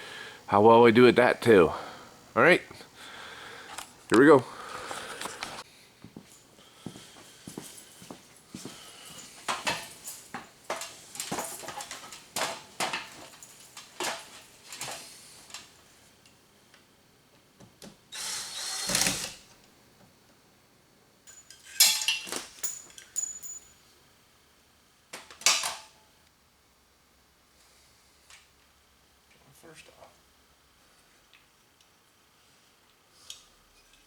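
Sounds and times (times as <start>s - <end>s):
hardware clatter: 9.4s - 15.7s, 21.3s - 23.8s.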